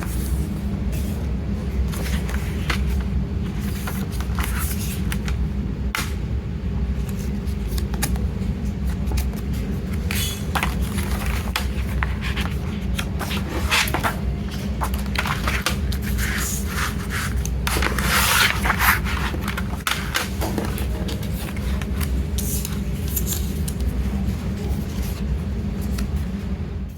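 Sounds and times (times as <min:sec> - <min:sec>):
steady low hum: 0:00.0 - 0:26.9.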